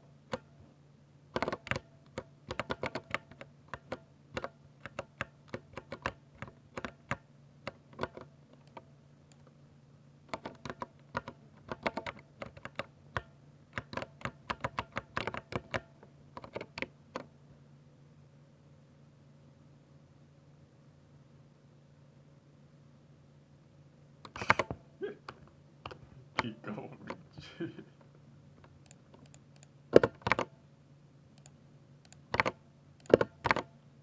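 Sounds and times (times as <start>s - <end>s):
typing on mechanical keyboard: 1.4s - 8.8s, 10.3s - 17.3s, 30.0s - 30.5s, 32.1s - 33.7s.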